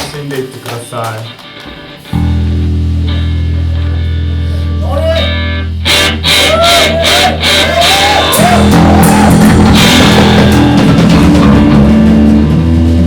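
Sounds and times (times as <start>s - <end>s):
live rock band: 0.0s - 13.0s
heavy guitar and bass chords: 1.2s - 13.0s
drum hits: 7.5s - 13.0s.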